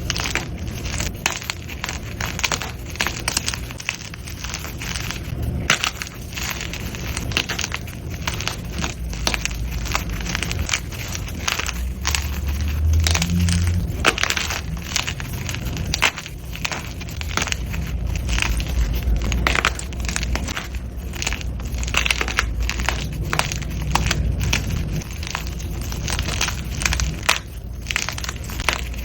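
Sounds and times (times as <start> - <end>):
chalk crunching and crackling: 0.0 - 29.0.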